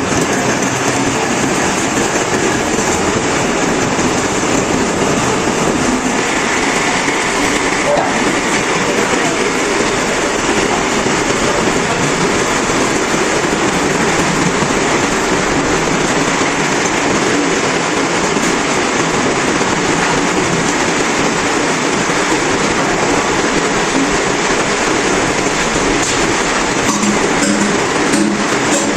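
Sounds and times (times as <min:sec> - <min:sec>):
lathe cutting: 0:25.8 - 0:28.9.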